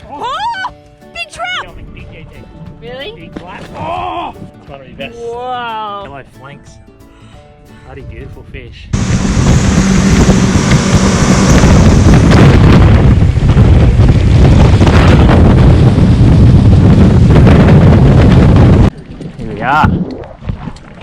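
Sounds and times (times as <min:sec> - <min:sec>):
wind buffeting microphone: 0:08.1 - 0:21.0
outboard motor running: 0:09.0 - 0:18.9.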